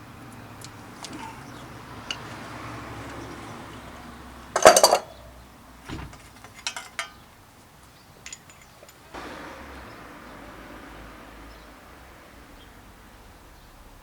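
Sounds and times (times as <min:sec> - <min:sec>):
metallic clinks of bicycle parts: 0:00.6 - 0:03.5, 0:04.5 - 0:05.3, 0:06.1 - 0:07.3, 0:08.2 - 0:09.1.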